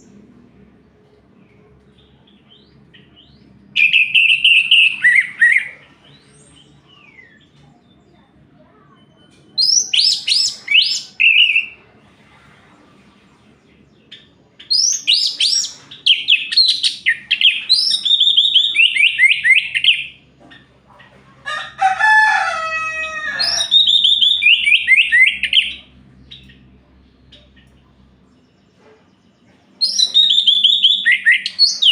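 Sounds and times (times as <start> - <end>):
thrush singing whistled notes: 14.7 - 20.1, 23.4 - 26.5, 29.8 - 31.9
harsh crowing call: 21.4 - 25.7.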